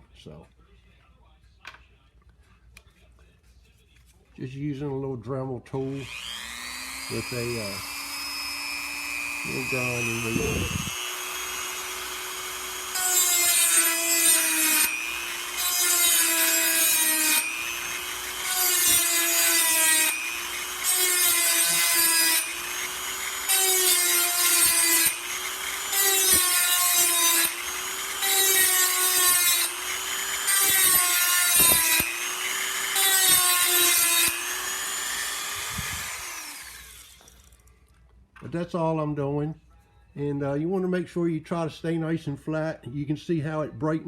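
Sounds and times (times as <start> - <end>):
rotary tool high whine: 5.9 - 37.6
grinding wheel on steel blade: 6.0 - 37.2.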